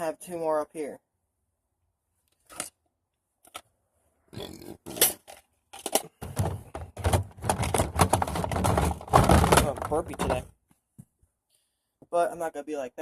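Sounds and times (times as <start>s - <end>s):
gear handling noise: 4.9s - 10.5s
scraping and knocking: 6.1s - 10.5s.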